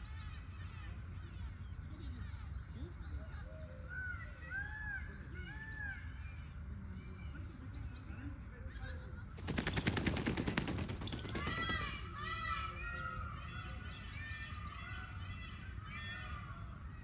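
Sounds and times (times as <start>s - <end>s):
small birds chirping: 9.2s - 15.6s
peacock feathers rattling: 9.4s - 12.6s.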